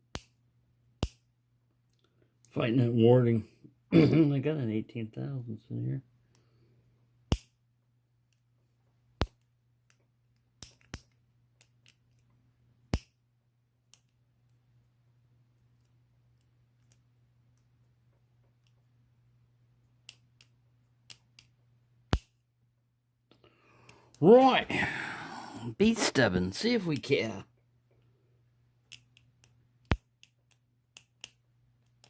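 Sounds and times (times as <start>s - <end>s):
faint low hum: 0.3s - 32.0s.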